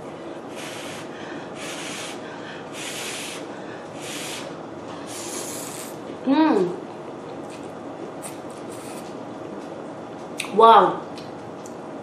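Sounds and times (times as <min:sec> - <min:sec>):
person breathing through nose: 0:00.5 - 0:05.9.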